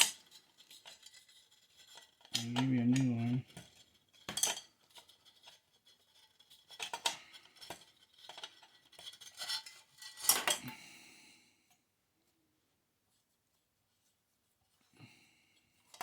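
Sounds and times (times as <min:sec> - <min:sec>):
metal tool scraping and clicking: 0:00.0 - 0:03.0.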